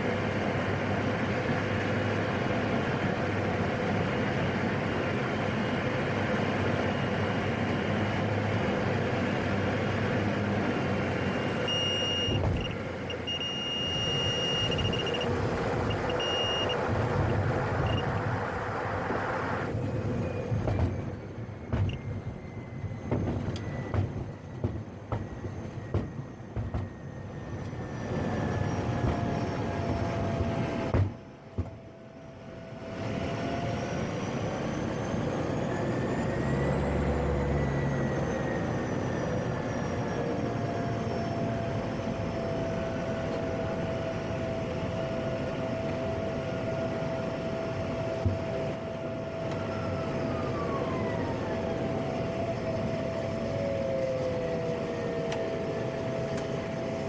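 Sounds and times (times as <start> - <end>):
turboprop engine and propeller drone: 0.0 - 57.0.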